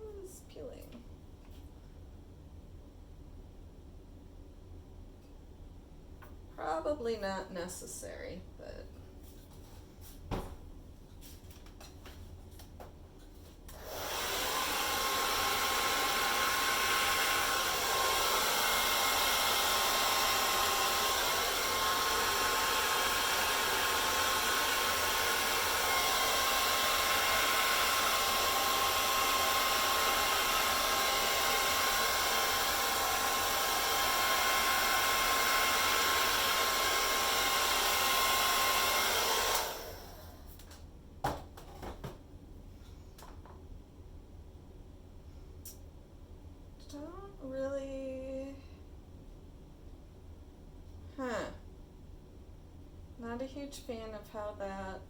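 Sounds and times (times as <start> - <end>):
hair dryer running: 13.7 - 40.6.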